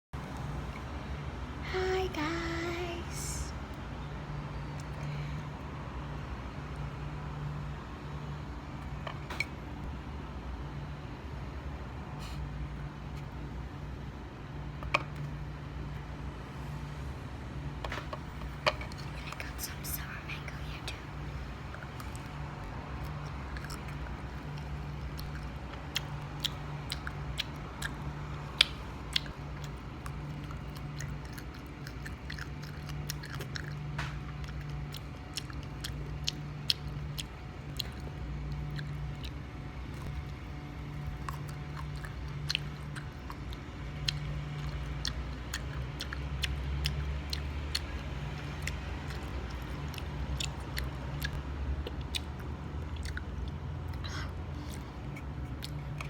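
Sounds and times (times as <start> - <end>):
person chewing crunchy fruit: 18.3 - 56.0.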